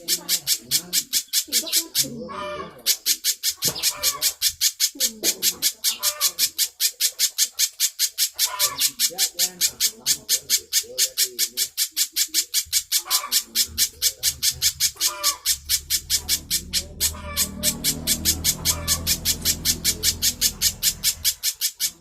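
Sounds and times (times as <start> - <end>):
bird calling high sharp notes: 5.7 - 22.0.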